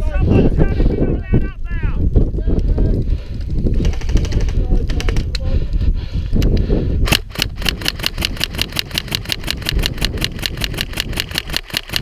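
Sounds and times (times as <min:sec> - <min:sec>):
wind rumble on microphone: 0:00.0 - 0:12.0
airsoft gun full-auto burst: 0:07.1 - 0:12.0.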